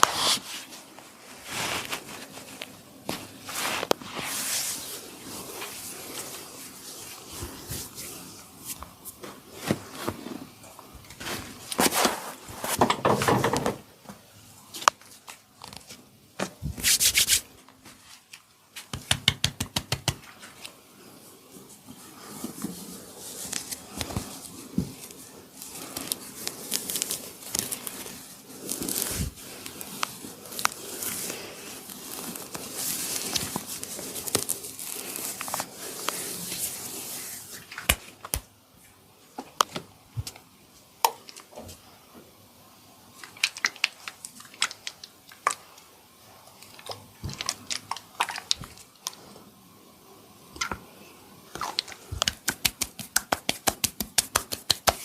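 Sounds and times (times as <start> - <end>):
hands rubbing hair and skin: 0.0 - 12.8, 16.7 - 38.4, 51.7 - 55.0.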